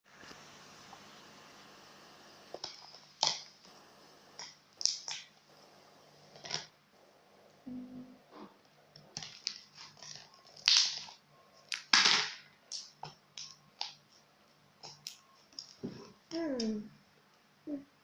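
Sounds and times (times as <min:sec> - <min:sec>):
slime squishing and squelching: 0:09.1 - 0:14.2.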